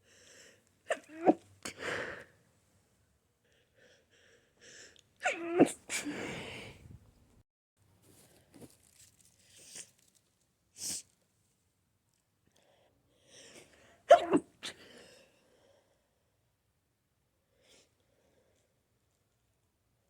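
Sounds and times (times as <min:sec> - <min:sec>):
person sneezing: 0:00.9 - 0:02.2, 0:05.2 - 0:06.8, 0:14.1 - 0:14.9.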